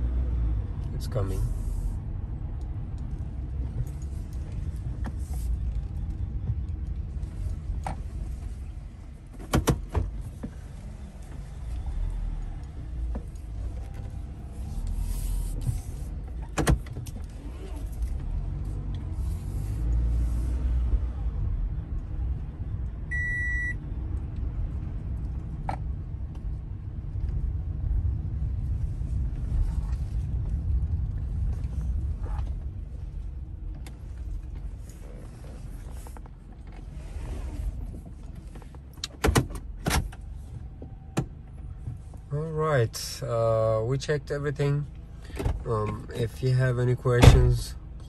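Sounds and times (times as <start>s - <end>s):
car engine and road rumble: 0.0s - 48.0s
short electronic beep: 23.1s - 23.8s.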